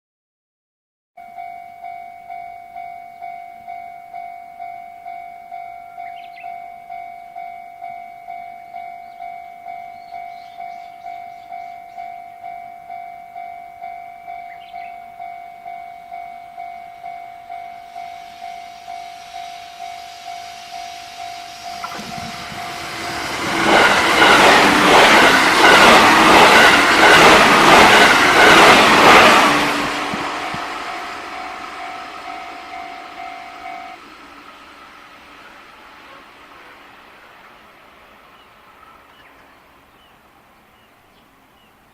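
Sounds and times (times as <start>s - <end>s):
level-crossing alarm ringing: 1.2s - 34.1s
electric train passing: 1.2s - 41.9s.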